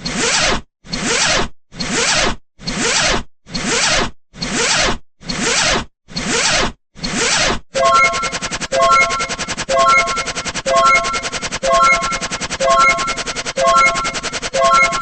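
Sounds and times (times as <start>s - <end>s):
ticking rattle with musical tones: 7.8s - 15.0s.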